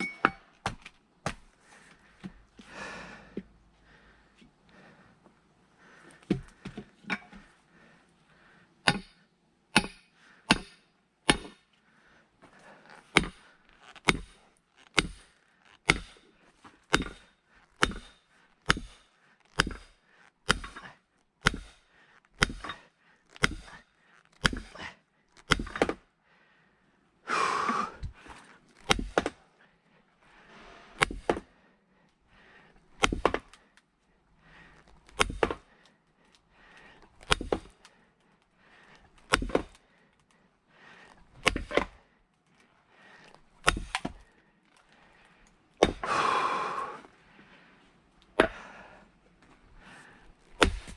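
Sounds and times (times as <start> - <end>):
firewood being split: 13.0 - 26.0, 28.1 - 29.4, 31.0 - 31.5, 32.9 - 33.6, 34.6 - 40.4, 41.1 - 42.0, 43.2 - 45.0, 50.4 - 50.9.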